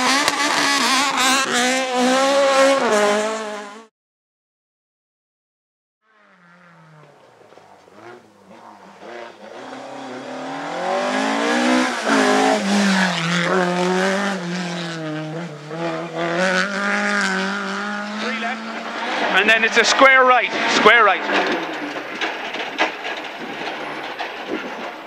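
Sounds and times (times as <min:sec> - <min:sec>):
rally car engine at full throttle: 0:00.0 - 0:03.9, 0:06.1 - 0:25.0.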